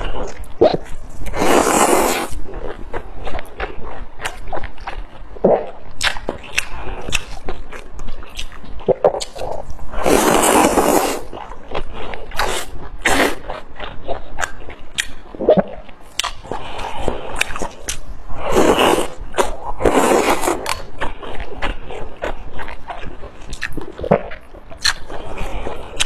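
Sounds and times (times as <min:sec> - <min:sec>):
chewing and biting: 0:00.0 - 0:26.0
wet mouth clicks and smacks: 0:14.4 - 0:15.2, 0:16.2 - 0:16.4, 0:23.5 - 0:25.1.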